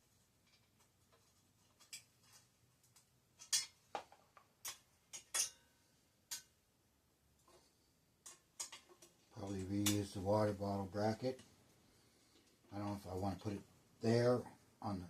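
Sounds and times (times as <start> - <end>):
small hard parts clicking: 8.2 - 10.0.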